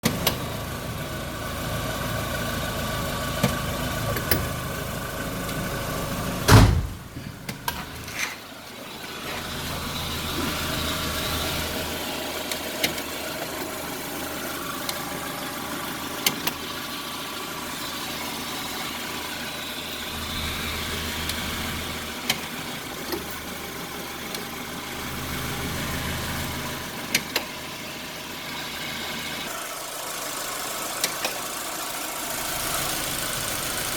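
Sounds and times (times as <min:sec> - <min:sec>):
car engine idling: 0:00.0 - 0:33.9
loud knock of gear engaging: 0:06.5 - 0:07.7.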